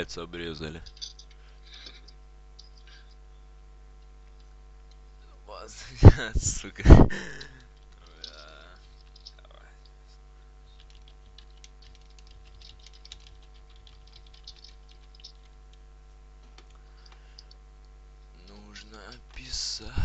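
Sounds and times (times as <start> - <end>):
low electrical hum: 0.0 - 20.0
faint irregular clicking: 0.8 - 3.2, 7.3 - 10.0, 10.7 - 18.3.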